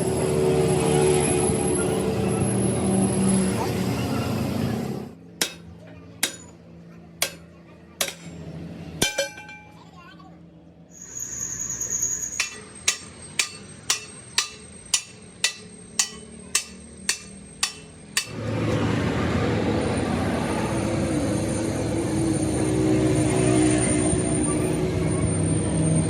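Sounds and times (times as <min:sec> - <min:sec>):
machine noise with high whine: 0:00.0 - 0:09.8, 0:10.9 - 0:26.0
hammer blows on steel: 0:12.3 - 0:18.4.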